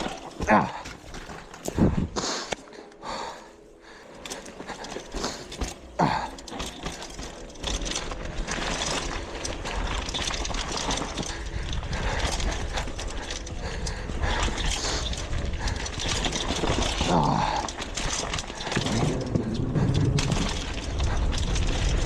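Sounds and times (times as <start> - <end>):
chain and frame clatter: 0.0 - 2.1, 4.0 - 22.0
bike tyres on dirt: 0.0 - 22.0
wind rumbling on microphone: 8.0 - 22.0.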